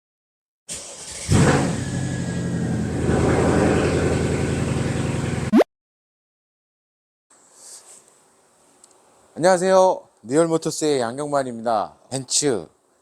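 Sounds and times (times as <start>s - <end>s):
car engine running: 1.3s - 5.5s.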